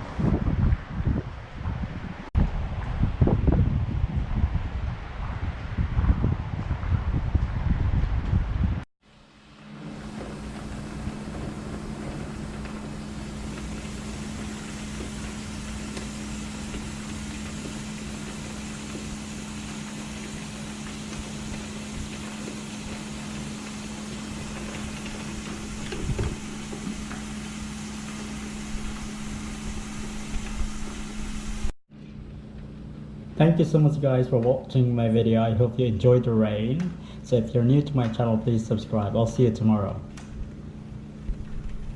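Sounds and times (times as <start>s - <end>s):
wind and rain on microphone: 0.0s - 8.8s, 9.5s - 31.7s, 40.2s - 41.9s
machine hum: 9.1s - 41.9s.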